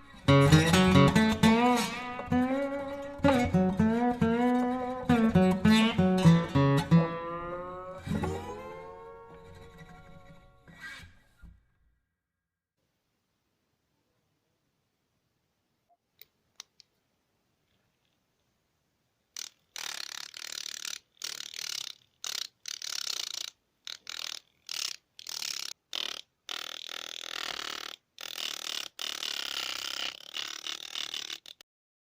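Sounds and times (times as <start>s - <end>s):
mini angle grinder motor: 19.4s - 31.6s.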